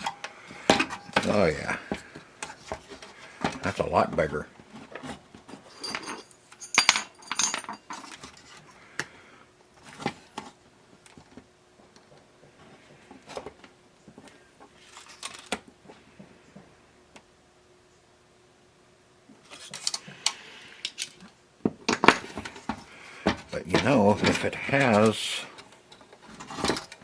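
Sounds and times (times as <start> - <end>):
metal parts clinking: 5.6 - 8.6.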